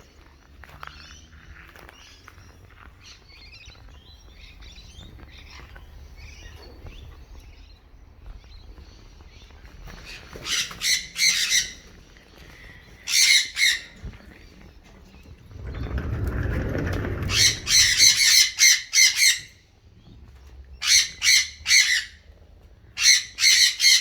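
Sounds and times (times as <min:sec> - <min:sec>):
cockatoos chirping: 0:09.0 - 0:14.6.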